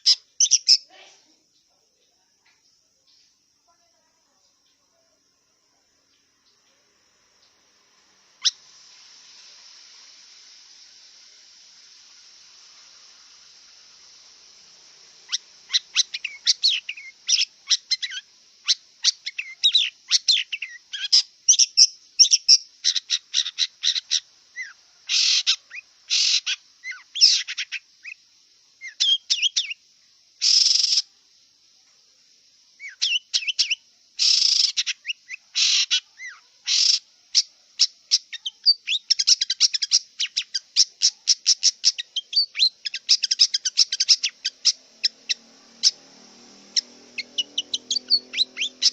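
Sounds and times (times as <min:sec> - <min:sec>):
bird singing chirps and trills: 0:00.0 - 0:00.9, 0:15.3 - 0:28.2, 0:28.8 - 0:29.8, 0:32.8 - 0:48.9.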